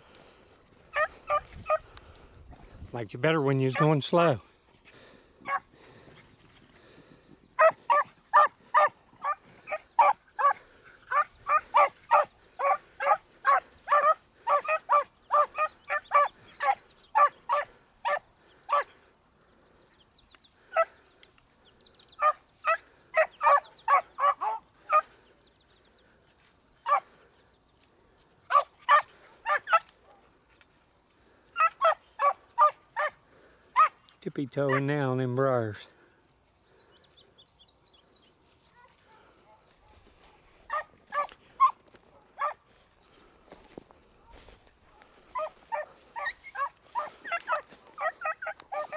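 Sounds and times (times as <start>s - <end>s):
dogs baying and barking: 0.8s - 2.0s, 3.6s - 4.4s, 5.0s - 19.1s, 20.6s - 21.0s, 22.2s - 25.4s, 26.8s - 27.4s, 28.5s - 30.5s, 31.3s - 35.1s, 38.7s - 43.3s, 44.2s - 48.9s.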